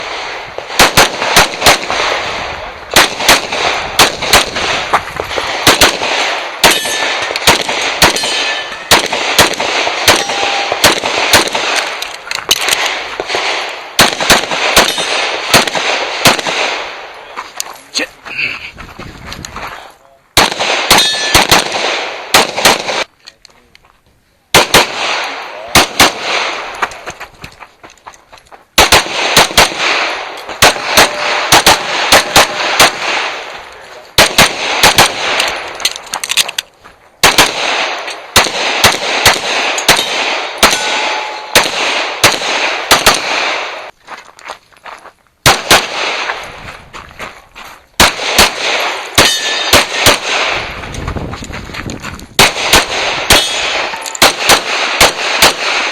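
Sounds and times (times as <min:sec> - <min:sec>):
handgun shots: 0:02.9 - 0:16.8, 0:20.4 - 0:23.1, 0:24.6 - 0:27.1, 0:28.8 - 0:33.5, 0:34.2 - 0:36.6, 0:37.2 - 0:43.8, 0:48.0 - 0:50.6, 0:52.4 - 0:55.9
steel targets ringing: 0:06.6 - 0:07.4, 0:08.1 - 0:08.9, 0:10.0 - 0:10.8, 0:20.9 - 0:21.4, 0:31.0 - 0:32.8, 0:39.8 - 0:41.6, 0:49.2 - 0:49.7.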